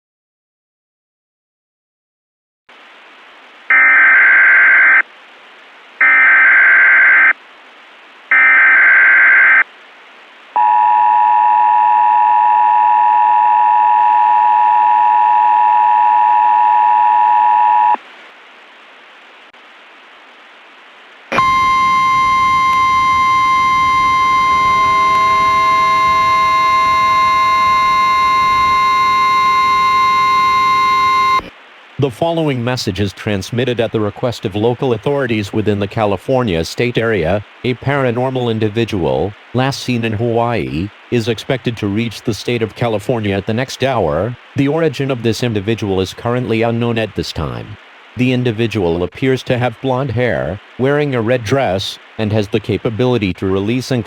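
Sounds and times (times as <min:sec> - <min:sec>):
faint hiss: 0:18.0 - 0:54.0
lower steady tones: 0:21.3 - 0:31.5
steady high alert tone: 0:21.3 - 0:31.5
two-tone attention signal: 0:21.3 - 0:31.5
warbling data tones: 0:21.3 - 0:31.5.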